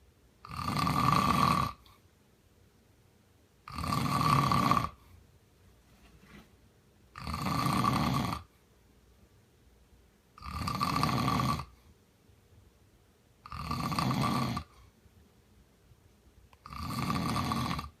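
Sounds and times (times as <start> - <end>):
man snoring: 0.4 - 1.8, 3.7 - 5.0, 7.2 - 8.5, 10.4 - 11.7, 13.5 - 14.7, 16.6 - 18.0.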